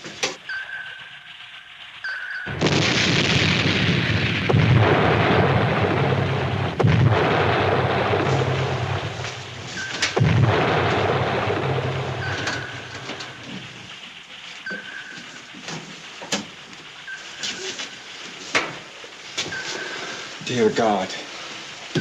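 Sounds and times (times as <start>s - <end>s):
depth charge explosions: 1.0s - 17.2s.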